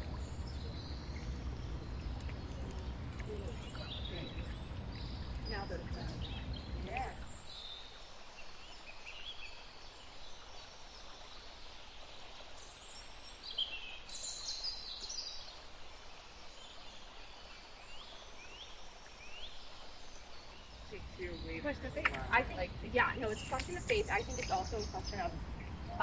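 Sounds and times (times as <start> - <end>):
birds chirping: 0.0 - 7.8, 18.0 - 26.0
outdoor background noise: 0.0 - 26.0.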